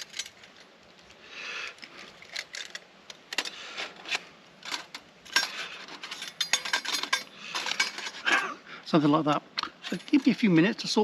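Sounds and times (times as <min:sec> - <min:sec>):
metal parts scraping: 0:00.0 - 0:00.7, 0:01.6 - 0:08.4, 0:09.8 - 0:10.4
metal parts clicking and clinking: 0:00.0 - 0:08.3, 0:09.8 - 0:10.4.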